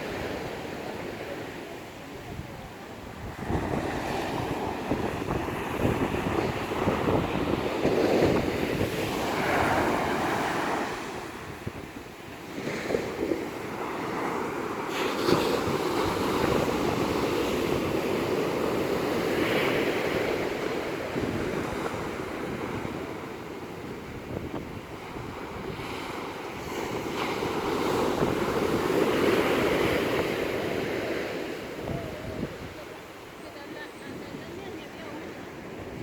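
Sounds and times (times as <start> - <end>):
sea surf breaking: 0.0 - 36.0
wind buffeting microphone: 2.0 - 14.3, 15.0 - 36.0.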